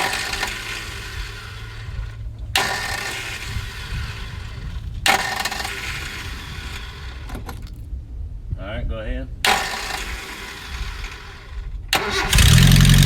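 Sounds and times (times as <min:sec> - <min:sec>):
car engine running unevenly: 0:00.0 - 0:07.7, 0:09.5 - 0:13.0
hissy engine surge: 0:09.5 - 0:13.0.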